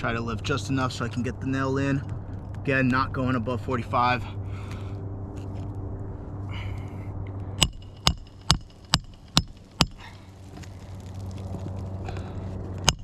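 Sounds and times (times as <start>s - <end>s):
hammer striking roofing nail: 7.6s - 10.0s.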